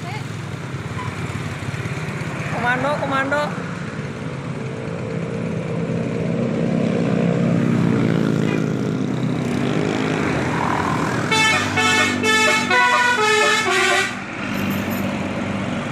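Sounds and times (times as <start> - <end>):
bus engine running: 0.0 - 15.9
multi-tone bus horn melody: 11.2 - 14.5.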